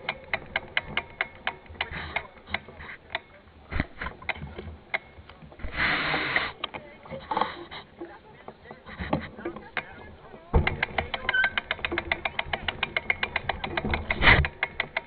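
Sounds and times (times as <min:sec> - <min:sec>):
bicycle freewheel ticking: 0:00.0 - 0:03.3, 0:10.5 - 0:15.0.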